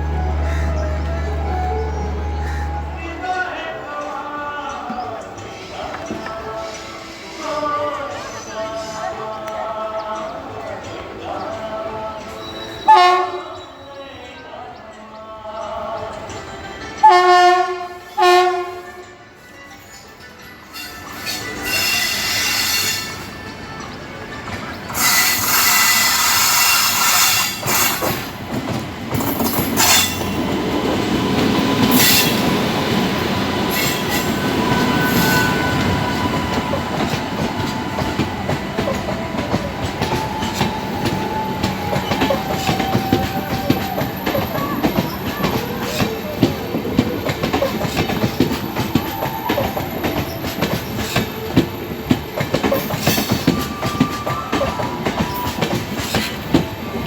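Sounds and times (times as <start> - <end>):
train wheels clattering over rail joints: 24.4 - 57.0.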